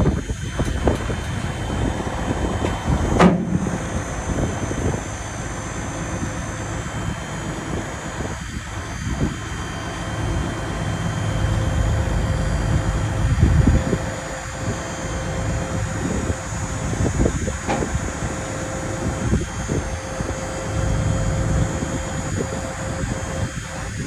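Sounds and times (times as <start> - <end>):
vehicle engine rumbling: 0.0 - 7.8.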